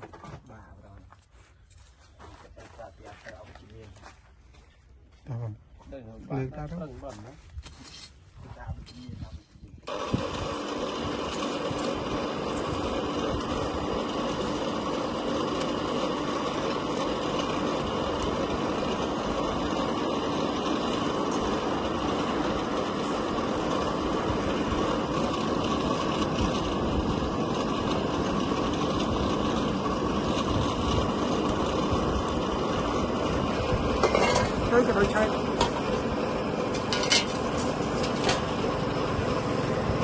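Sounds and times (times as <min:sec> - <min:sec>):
machine running steadily: 0:08.6 - 0:40.0.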